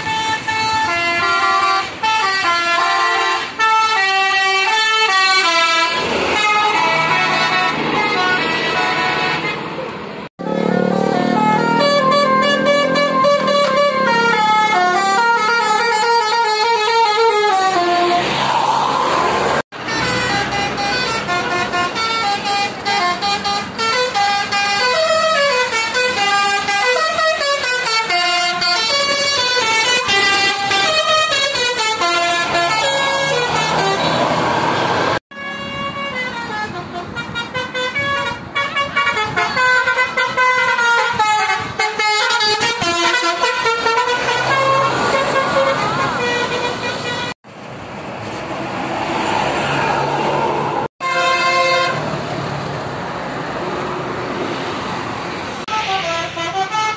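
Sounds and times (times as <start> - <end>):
multi-tone bus horns playing tunes: 0.0 - 18.4, 19.7 - 47.4, 50.0 - 52.2, 55.5 - 56.9.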